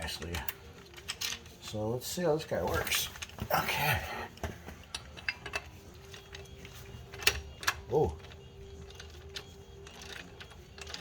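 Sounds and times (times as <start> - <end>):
ratchet wrench clicking: 4.9 - 11.0.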